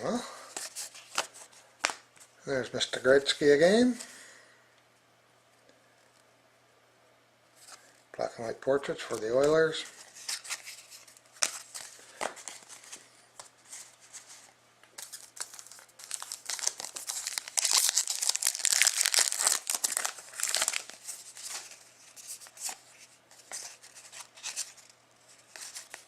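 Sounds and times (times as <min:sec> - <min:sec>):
card pack wrapper crinkling and tearing: 0:09.1 - 0:13.0, 0:14.9 - 0:22.8, 0:23.4 - 0:26.0.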